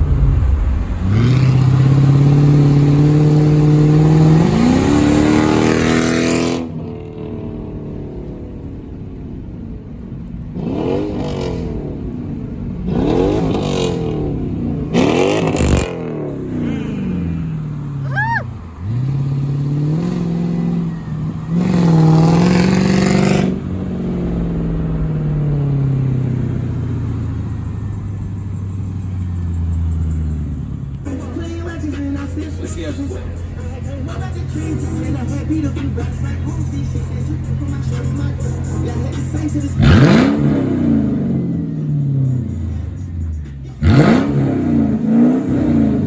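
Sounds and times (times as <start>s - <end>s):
car engine revving: 0.0s - 8.9s, 9.9s - 46.0s.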